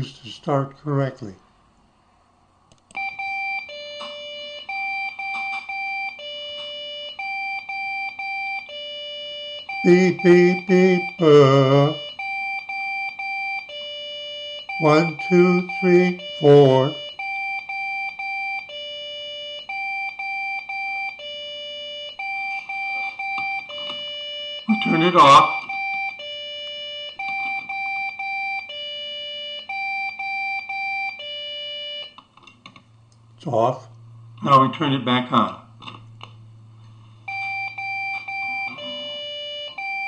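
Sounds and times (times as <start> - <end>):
computer motherboard beeps: 2.9 - 32.2, 37.2 - 40.0.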